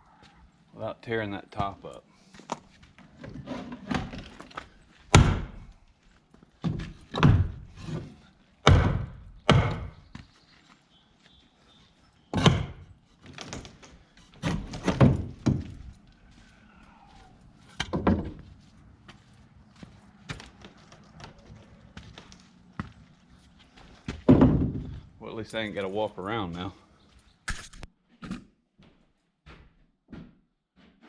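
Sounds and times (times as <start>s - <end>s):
heavy blows on wood: 5.1s - 5.7s, 6.7s - 10.0s, 12.4s - 12.9s.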